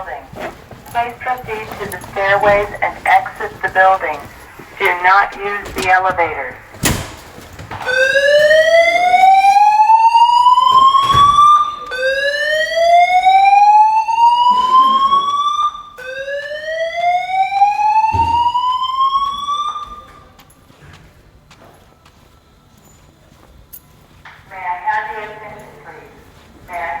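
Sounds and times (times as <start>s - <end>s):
fire alarm whoop tone: 7.7s - 20.5s.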